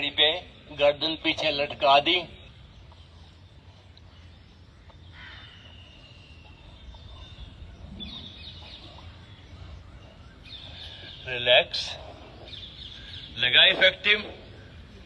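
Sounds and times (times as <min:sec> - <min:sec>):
low steady hum: 0:00.0 - 0:15.0
faint bird calls: 0:02.8 - 0:15.0.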